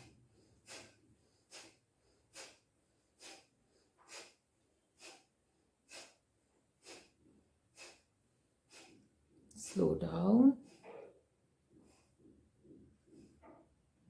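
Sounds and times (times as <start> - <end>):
forceful nasal exhalations: 0.4 - 4.4, 5.0 - 5.3, 5.9 - 6.2, 6.8 - 8.1, 8.7 - 9.0.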